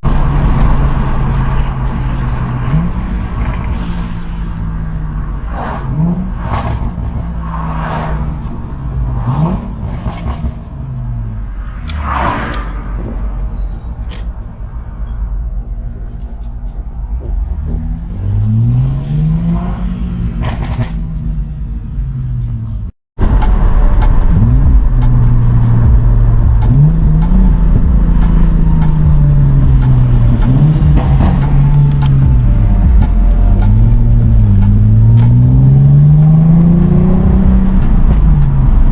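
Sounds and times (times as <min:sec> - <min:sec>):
car engine revving: 0:00.0 - 0:13.5, 0:16.9 - 0:38.9
exhaust crackling and popping: 0:22.4 - 0:38.9.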